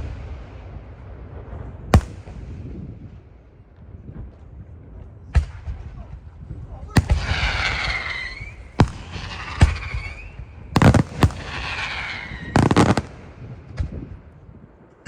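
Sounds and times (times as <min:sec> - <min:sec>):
fireworks exploding: 0:02.0 - 0:02.4, 0:07.0 - 0:14.1
fireworks whistling: 0:07.0 - 0:13.2.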